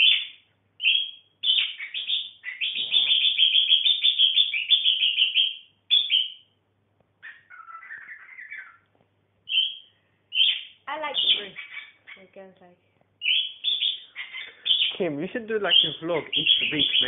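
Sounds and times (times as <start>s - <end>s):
budgerigar warbling chatter: 0.0s - 6.4s, 7.2s - 8.9s, 9.5s - 12.3s, 13.2s - 17.0s
budgerigar chirping: 0.0s - 6.6s, 7.2s - 8.9s, 9.5s - 12.4s, 13.2s - 17.0s.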